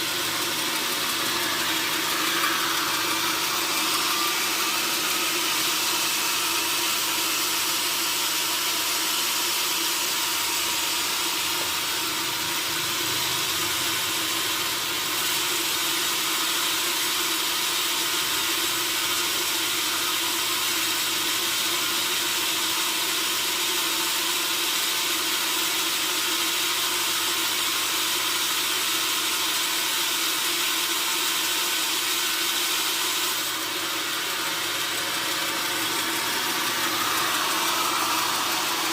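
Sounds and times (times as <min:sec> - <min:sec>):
mill machinery drone: 0:00.0 - 0:22.4, 0:32.5 - 0:38.9
band saw cutting log: 0:00.0 - 0:23.3, 0:31.9 - 0:38.9.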